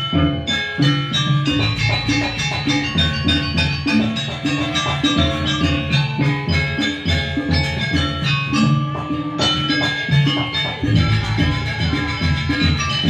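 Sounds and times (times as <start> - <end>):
drums: 0.0 - 13.0
metal keyed instruments melody: 0.0 - 13.0.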